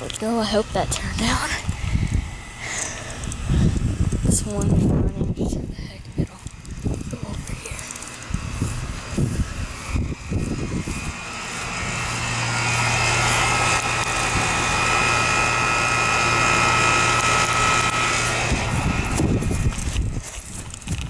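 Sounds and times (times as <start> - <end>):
compressor hum: 0.0 - 21.0
condenser fan whoosh: 0.0 - 21.0
steady high tones: 0.2 - 5.0.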